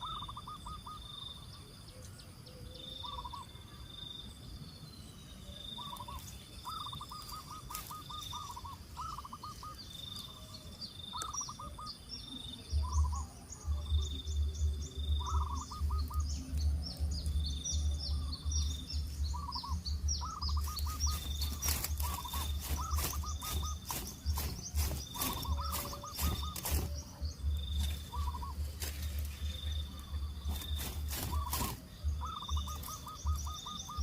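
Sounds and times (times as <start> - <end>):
birds trilling and chirping: 0.0 - 34.0.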